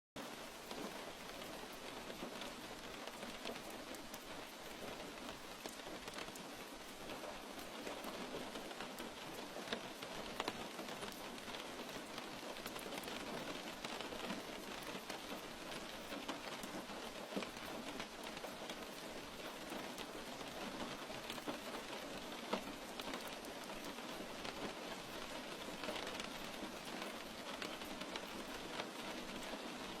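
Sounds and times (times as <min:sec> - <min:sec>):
steady rain hiss: 0:00.2 - 0:30.0.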